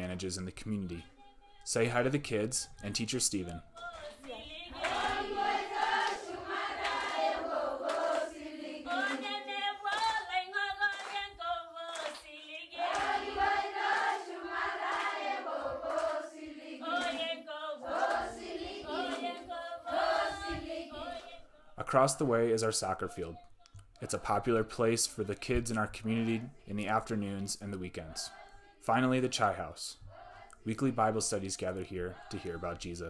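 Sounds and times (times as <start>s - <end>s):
young children singing together: 4.1s - 11.8s, 12.6s - 21.8s.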